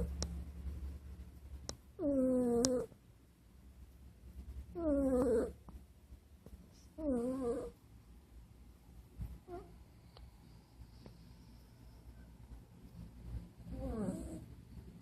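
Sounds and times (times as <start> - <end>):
snoring with whining squeak: 2.0 - 2.9, 4.8 - 5.6, 7.0 - 7.8, 13.7 - 14.5.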